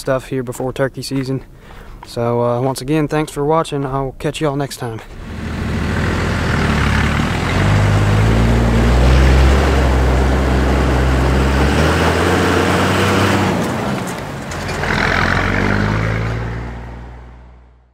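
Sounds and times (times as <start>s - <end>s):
vehicle engine humming: 5.1s - 17.9s.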